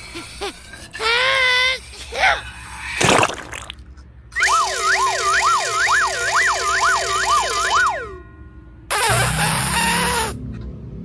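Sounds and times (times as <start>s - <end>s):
siren wailing: 4.4s - 8.3s.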